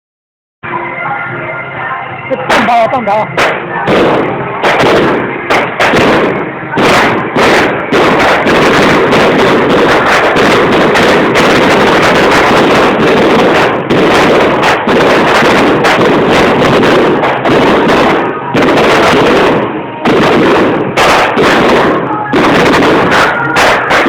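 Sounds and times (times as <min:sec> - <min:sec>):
firecrackers rattling: 0:02.3 - 0:24.0
loud bangs: 0:02.3 - 0:24.0.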